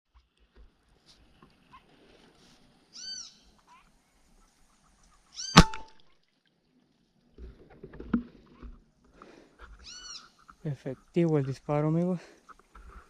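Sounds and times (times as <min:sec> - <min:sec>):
air rifle shot: 0:05.6 - 0:05.9.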